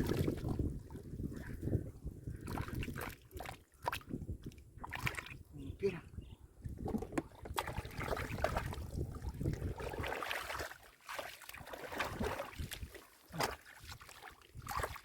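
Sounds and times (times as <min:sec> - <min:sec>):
muddy water sloshing and splashing: 0:00.0 - 0:05.8, 0:06.6 - 0:15.0
knocks and slaps in mud: 0:09.6 - 0:15.0.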